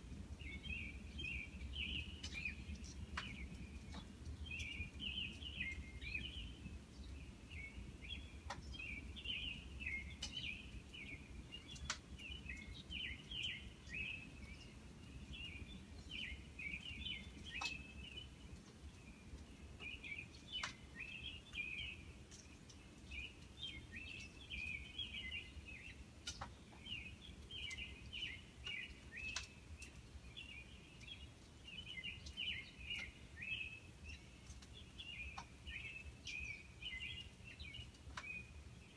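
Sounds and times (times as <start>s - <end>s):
small birds chirping: 0.2s - 38.9s
faint sharp clicks: 2.2s - 5.8s, 8.4s - 8.7s, 10.2s - 10.4s, 11.7s - 12.7s, 17.5s - 17.8s, 18.6s - 20.8s, 26.2s - 30.1s, 32.2s - 33.1s, 34.4s - 35.5s, 37.2s - 38.4s.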